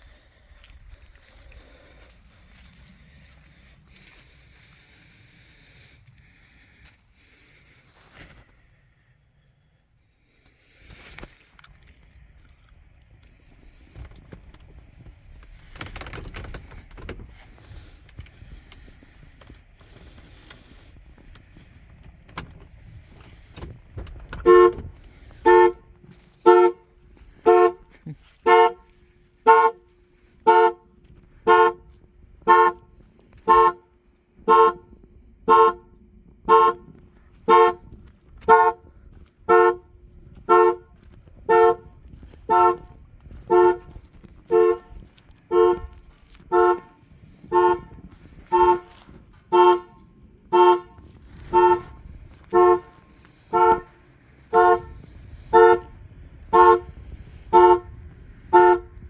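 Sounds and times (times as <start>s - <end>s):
car horn honking: 24.3s - 59.0s.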